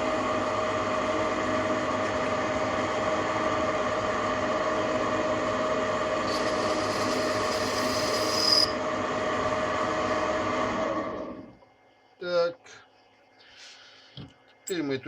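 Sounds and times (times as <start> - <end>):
lathe motor whine: 0.1 - 11.5
cutter squealing: 6.3 - 8.8.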